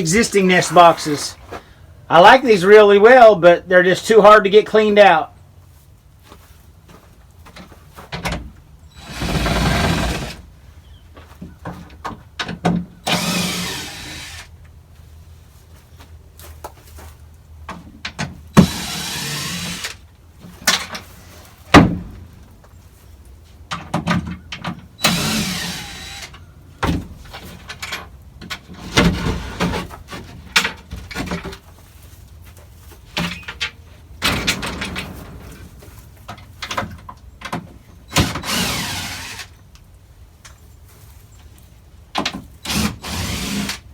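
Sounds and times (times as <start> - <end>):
cordless drill driving screws: 9.0 - 10.4, 13.0 - 14.5, 18.6 - 20.0, 25.0 - 26.4, 38.1 - 39.6, 42.6 - 43.9
sharp knocks and clatter: 33.2 - 38.4.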